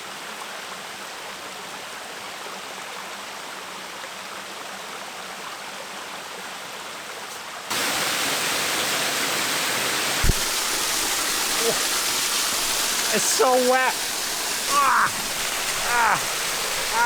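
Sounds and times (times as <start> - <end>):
waterfall rushing water: 7.7 - 17.0.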